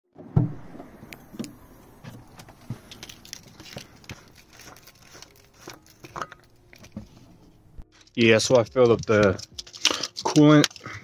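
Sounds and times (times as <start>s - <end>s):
loud thump: 0.2s - 1.6s.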